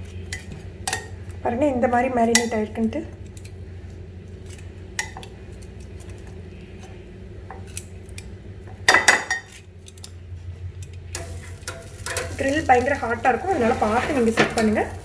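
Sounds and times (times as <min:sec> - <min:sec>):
low hum: 0:00.0 - 0:15.0.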